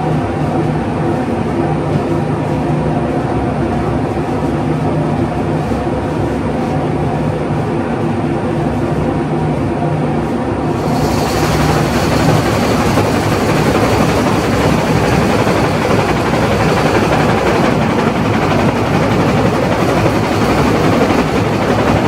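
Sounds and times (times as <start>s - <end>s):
carpet-beating machine humming: 10.7s - 22.0s
hiss: 10.8s - 22.0s.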